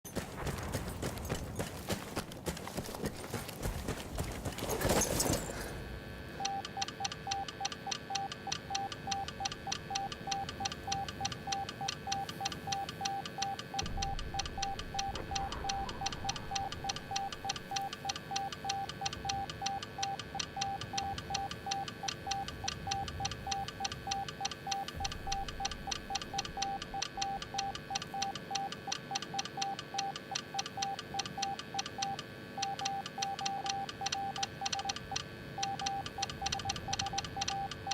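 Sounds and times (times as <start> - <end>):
morse code beeping tone: 6.4 - 37.9.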